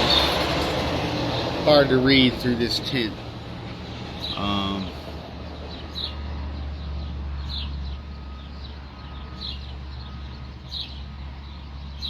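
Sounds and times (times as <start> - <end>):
bird chirping: 4.0 - 12.0.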